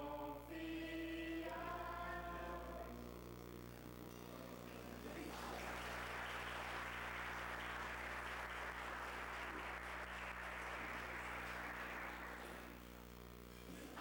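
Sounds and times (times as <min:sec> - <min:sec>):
audience applauding: 0:04.7 - 0:13.1.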